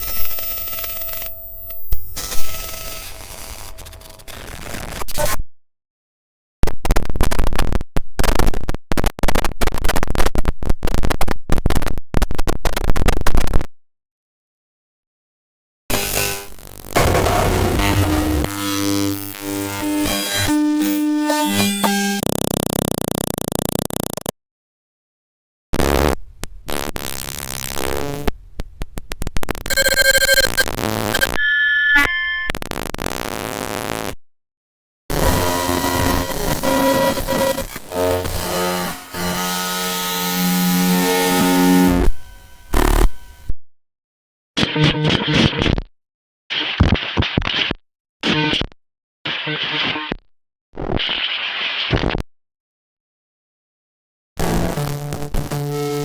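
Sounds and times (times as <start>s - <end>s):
electronic beeps: 0.0s - 3.3s, 29.7s - 32.5s
stuttering digital glitch static: 16.0s - 22.2s, 29.4s - 33.8s
digital glitch bursts: 29.7s - 32.5s.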